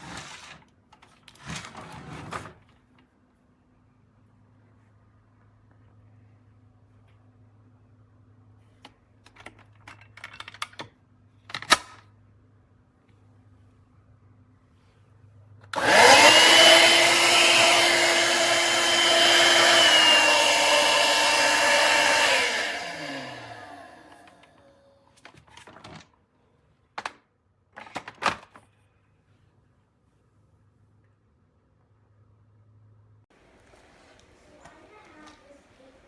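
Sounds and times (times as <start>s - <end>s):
vacuum motor whining: 15.8s - 24.7s.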